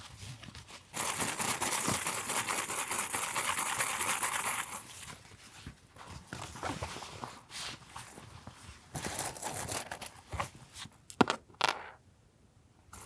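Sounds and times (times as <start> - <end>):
paper crinkling and rustling: 4.9 - 11.0.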